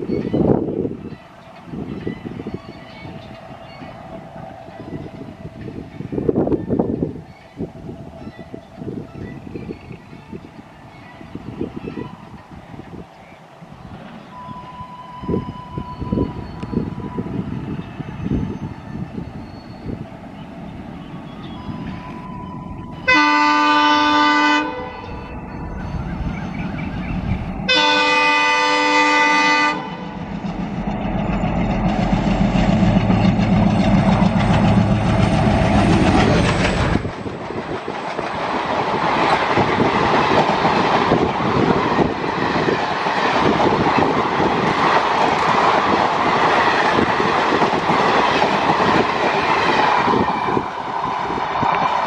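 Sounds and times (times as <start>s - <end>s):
locomotive engine rumbling: 0.0s - 52.0s
locomotive horn: 21.8s - 25.4s, 27.7s - 30.2s
train wheels clattering over rails: 30.2s - 52.0s.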